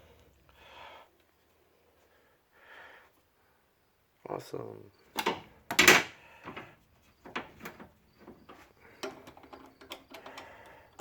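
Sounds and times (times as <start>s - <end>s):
sharp metal clunks: 5.2s - 6.7s.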